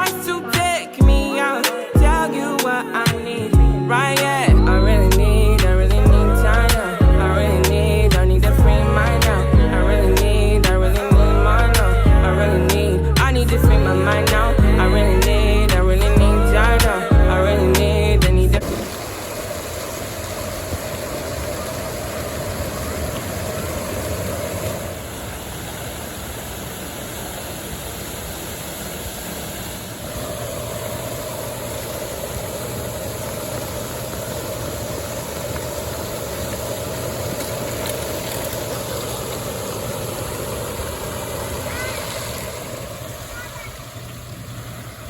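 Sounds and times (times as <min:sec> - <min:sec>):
fountain water jets rushing: 0:00.0 - 0:45.0
low pump hum: 0:03.5 - 0:45.0.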